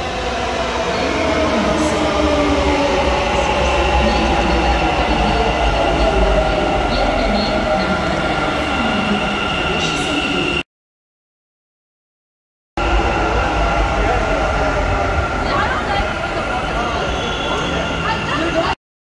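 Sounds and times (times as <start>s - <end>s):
train low rumble: 12.8s - 18.7s.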